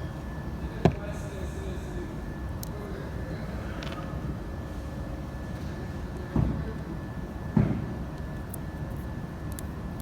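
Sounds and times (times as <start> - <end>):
low mechanical rumble: 0.0 - 10.0.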